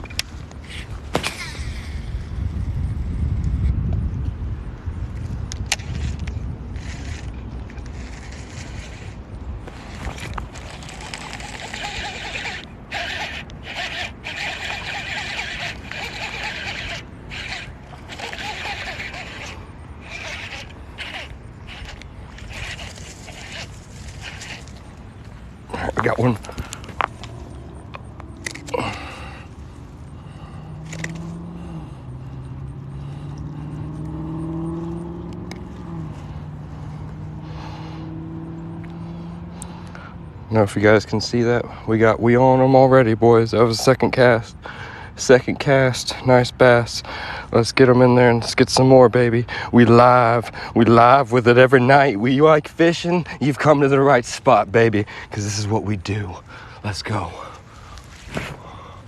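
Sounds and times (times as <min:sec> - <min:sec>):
low motor hum: 0:00.0 - 0:40.5
fishing reel whirring: 0:05.6 - 0:38.0.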